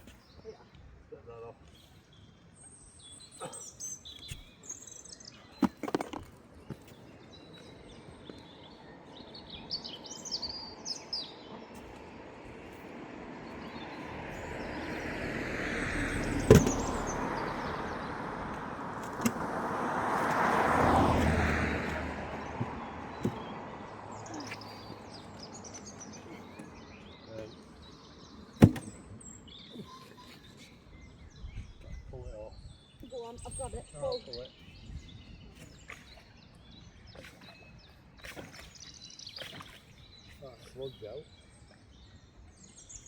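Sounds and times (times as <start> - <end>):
birds chirping: 0.0 - 43.0
sharp clunk: 16.4 - 17.0, 28.6 - 29.0.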